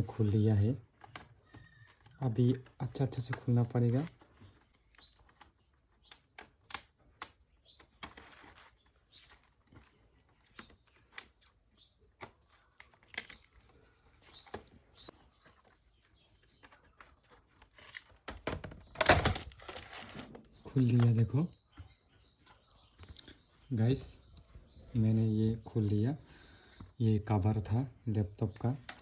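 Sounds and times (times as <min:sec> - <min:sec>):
plastic clips popping loose: 0:01.0 - 0:08.3, 0:17.9 - 0:21.2.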